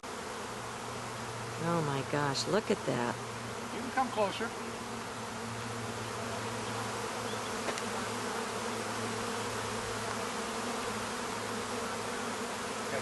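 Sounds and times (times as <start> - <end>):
bee swarm buzzing: 0.0 - 13.0.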